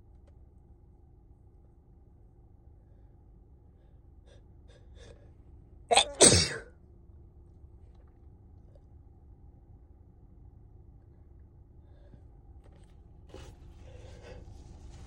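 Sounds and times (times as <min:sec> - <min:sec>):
person sneezing: 0:05.9 - 0:06.7
faint catching breaths: 0:11.8 - 0:15.0.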